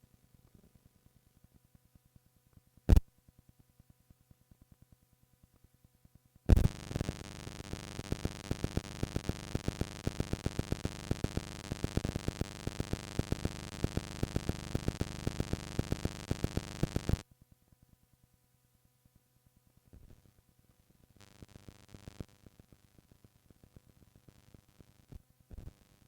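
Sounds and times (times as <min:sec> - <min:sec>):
tape hiss: 0:06.5 - 0:17.3, 0:19.1 - 0:26.0.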